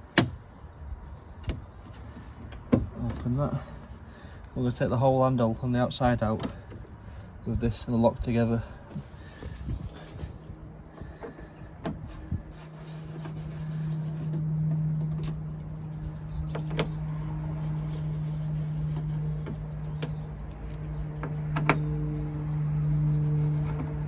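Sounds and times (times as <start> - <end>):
steady low hum: 5.9 - 24.0.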